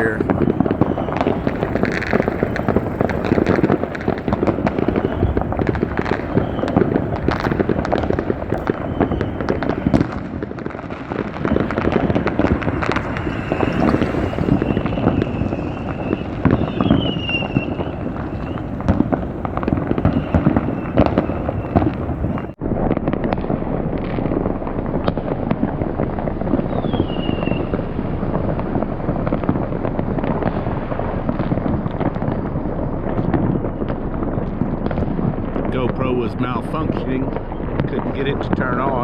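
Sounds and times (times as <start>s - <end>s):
falling firework whistles: 0.0s - 22.6s, 26.4s - 28.5s
fireworks and firecrackers banging: 0.0s - 39.0s.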